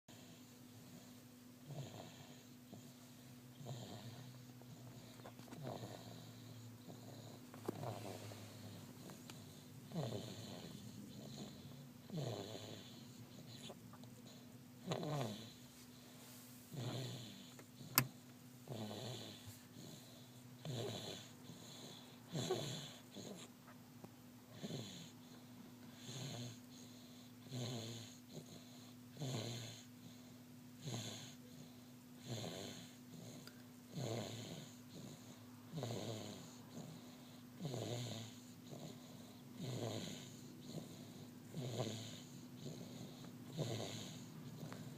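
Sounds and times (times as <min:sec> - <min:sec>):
steady low hum: 0:00.1 - 0:44.9
person snoring: 0:03.6 - 0:13.7, 0:14.8 - 0:15.6, 0:37.6 - 0:44.9.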